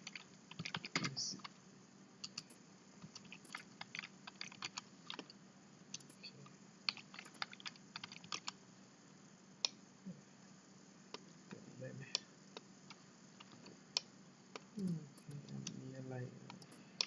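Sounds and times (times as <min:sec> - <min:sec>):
computer keyboard typing: 0:00.0 - 0:01.5, 0:02.2 - 0:05.3, 0:06.0 - 0:06.3, 0:06.9 - 0:08.6, 0:14.8 - 0:15.5, 0:16.5 - 0:17.0.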